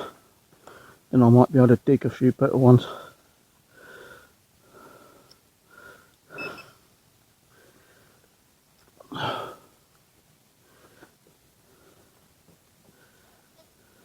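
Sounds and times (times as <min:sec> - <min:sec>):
man breathing heavily with wheeze: 0:00.0 - 0:01.1, 0:02.8 - 0:06.9, 0:07.5 - 0:08.4, 0:09.0 - 0:09.8, 0:10.6 - 0:14.0.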